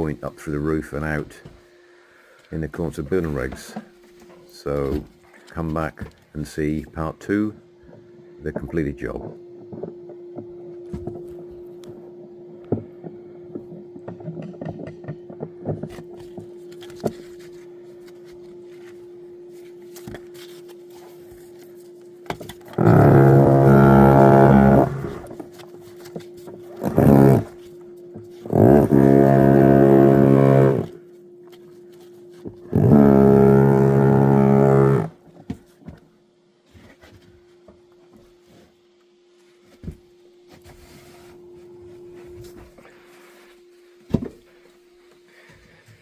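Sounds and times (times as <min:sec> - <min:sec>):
low hum: 0:00.0 - 0:46.0
droning power tool: 0:06.8 - 0:36.0.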